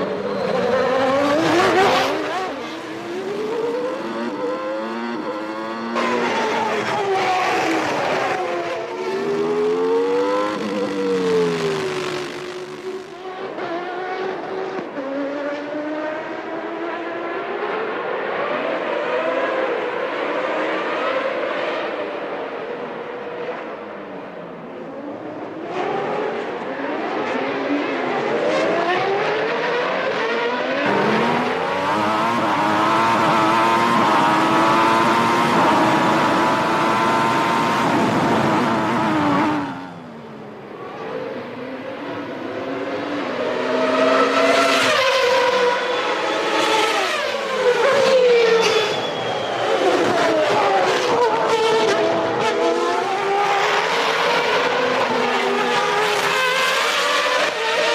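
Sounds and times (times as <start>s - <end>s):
race car engines revving: 0.0s - 57.9s.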